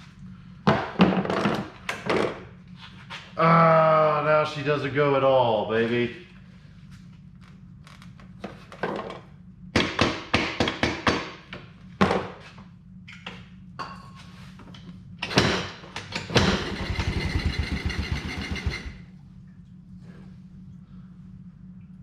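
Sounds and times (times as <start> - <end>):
starter motor clunks: 16.2 - 19.0
starter grinding buzz: 16.4 - 19.0.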